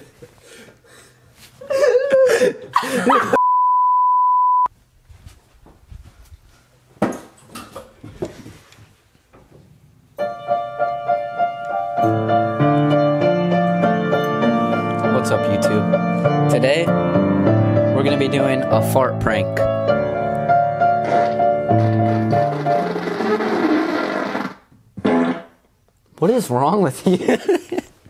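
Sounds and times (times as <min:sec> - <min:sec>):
censor bleep: 0:03.4 - 0:04.7
piano music: 0:10.2 - 0:23.0.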